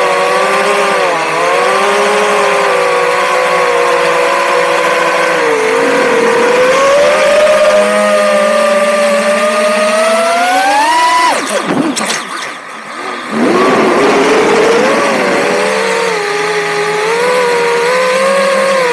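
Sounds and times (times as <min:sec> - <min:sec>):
drone motors whining: 0:00.0 - 0:18.9.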